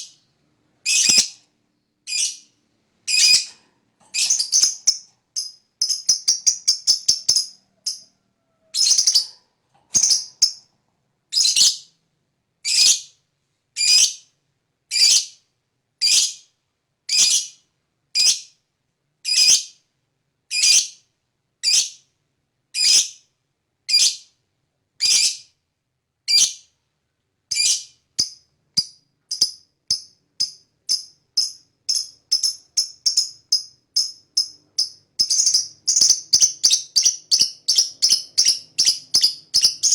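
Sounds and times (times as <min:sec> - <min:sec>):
lovebird shrill chirps: 0:00.8 - 0:01.4, 0:02.1 - 0:02.4, 0:03.1 - 0:03.5, 0:04.2 - 0:08.1, 0:08.7 - 0:09.3, 0:29.3 - 0:39.9.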